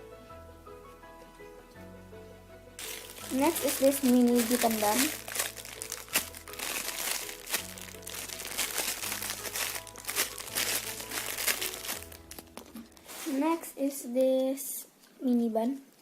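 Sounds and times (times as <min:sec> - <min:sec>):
squishy toys crinkling: 0:02.8 - 0:13.4.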